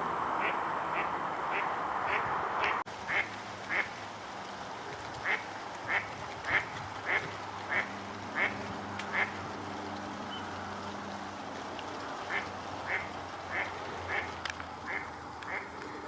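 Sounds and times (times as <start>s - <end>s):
duck quacking: 0.4s - 3.9s, 5.2s - 9.4s, 12.3s - 15.7s.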